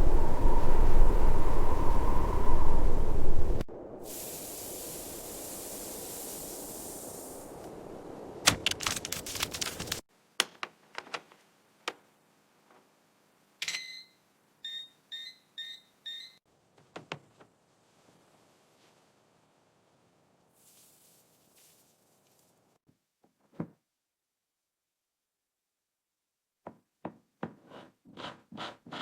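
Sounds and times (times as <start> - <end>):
steady hiss: 0.0 - 8.5, 17.8 - 22.8
short beeps: 13.6 - 16.4
high electronic beep: 13.7 - 16.4.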